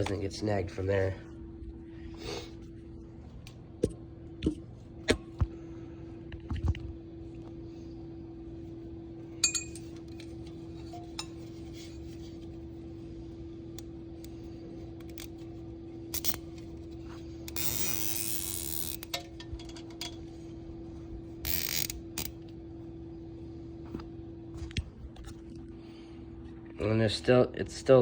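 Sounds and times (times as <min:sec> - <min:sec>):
steady hum: 0:00.0 - 0:28.0
zip tie zipping: 0:17.6 - 0:19.0.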